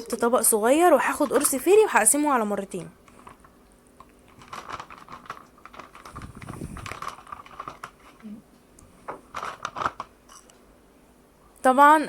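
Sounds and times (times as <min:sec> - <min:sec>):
plastic wrapper crinkling: 0:01.1 - 0:01.7, 0:02.7 - 0:08.4, 0:09.0 - 0:10.6.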